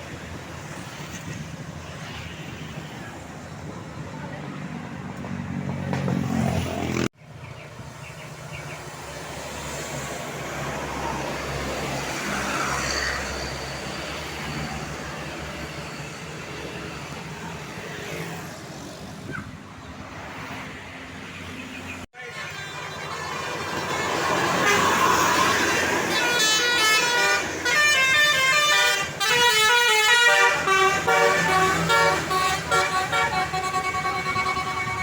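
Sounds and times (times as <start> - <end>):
road and tyre noise: 0.0 - 35.0
bus engine drone: 22.1 - 35.0.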